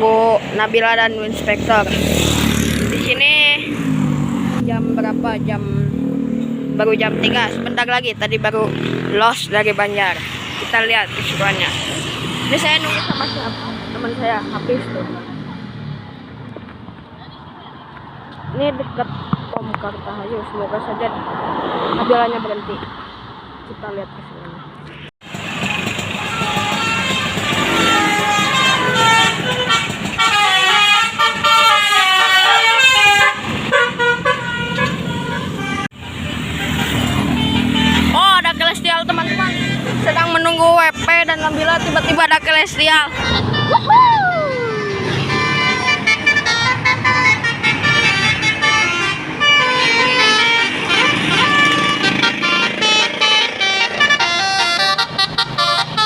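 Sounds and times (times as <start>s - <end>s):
bus engine running: 24.6s - 56.0s
bus musical air horn melody: 25.7s - 36.0s, 36.6s - 56.0s.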